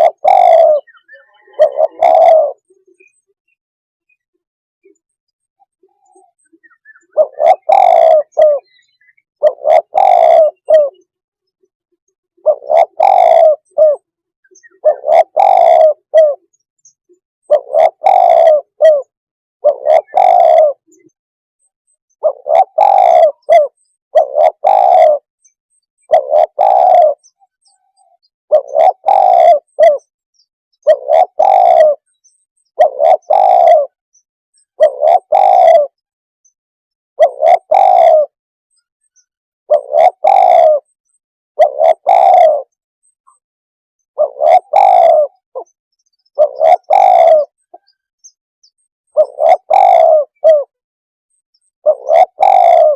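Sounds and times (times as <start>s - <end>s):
dove cooing: 0.0s - 3.2s, 5.8s - 11.1s, 12.4s - 16.6s, 17.4s - 21.2s, 22.2s - 25.3s, 26.0s - 27.4s, 28.0s - 30.1s, 30.8s - 32.1s, 32.8s - 34.0s, 34.8s - 36.0s, 37.2s - 38.4s, 39.7s - 41.0s, 41.6s - 43.4s, 44.0s - 48.0s, 48.7s - 50.8s, 51.8s - 52.9s.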